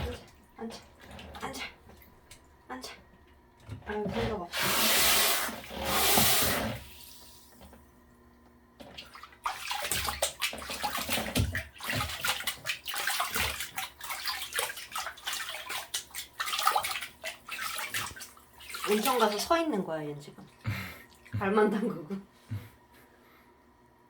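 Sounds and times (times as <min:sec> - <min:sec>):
water splashing in a tub: 0:00.0 - 0:02.7, 0:08.8 - 0:22.0.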